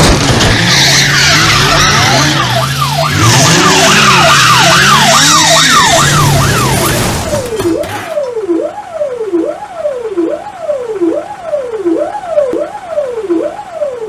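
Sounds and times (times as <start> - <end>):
emergency siren: 0.4 - 14.0.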